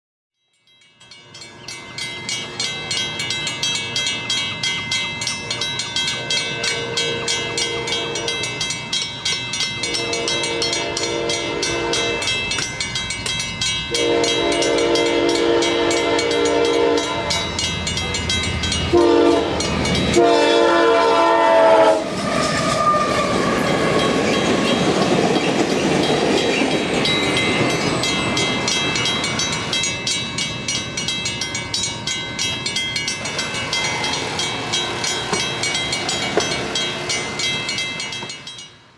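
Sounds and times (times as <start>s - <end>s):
train rumble and clickety-clack: 1.7s - 38.9s
locomotive air horn blasts: 6.8s - 8.4s, 9.9s - 12.3s, 13.9s - 17.4s, 18.9s - 19.6s, 20.2s - 22.2s.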